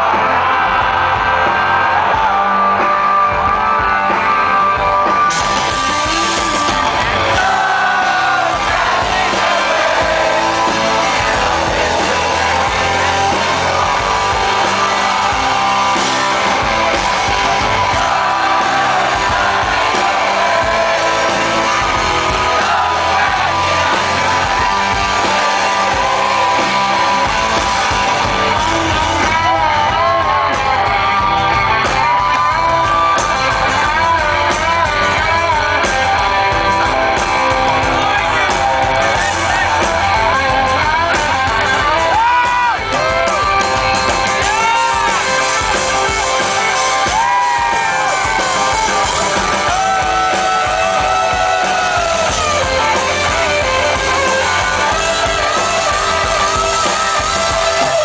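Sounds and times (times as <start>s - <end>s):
live rock band playing: 0.0s - 58.0s
person singing: 5.5s - 43.6s, 44.3s - 58.0s.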